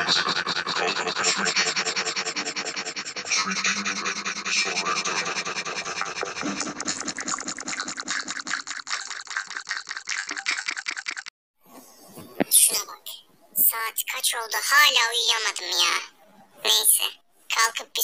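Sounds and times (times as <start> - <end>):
rhythmic scratching and rasping: 0.0 - 11.3.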